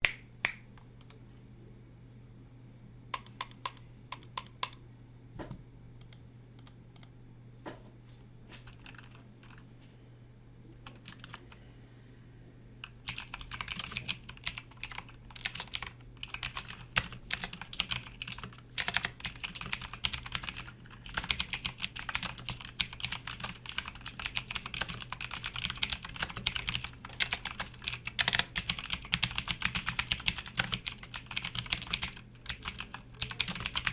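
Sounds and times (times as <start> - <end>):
clicky mechanical keyboard typing: 3.2 - 4.8, 8.6 - 9.7, 10.8 - 11.6, 12.8 - 33.9.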